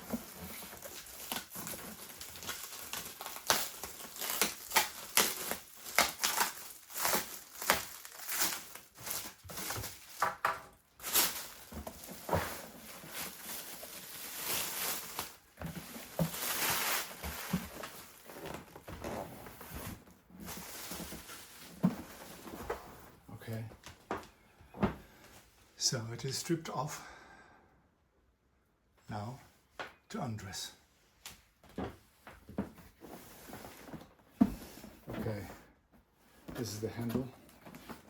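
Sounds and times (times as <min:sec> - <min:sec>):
packing material crinkling: 0:00.0 - 0:22.5.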